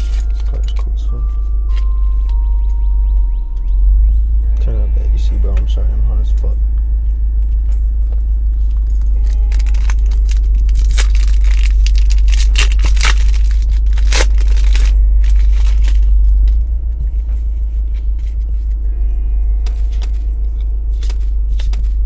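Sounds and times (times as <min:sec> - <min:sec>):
low rumble: 0:00.0 - 0:22.0
plastic packaging crinkling: 0:08.6 - 0:16.4.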